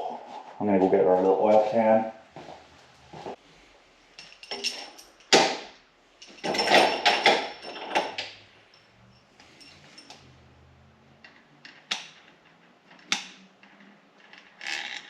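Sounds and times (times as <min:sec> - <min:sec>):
rattling and rummaging: 0:04.2 - 0:05.6, 0:06.2 - 0:10.4.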